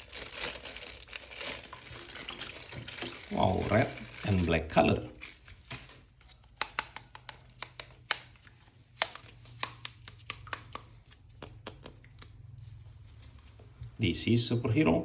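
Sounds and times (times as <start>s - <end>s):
clicks of handling plastic figure: 5.8s - 12.3s.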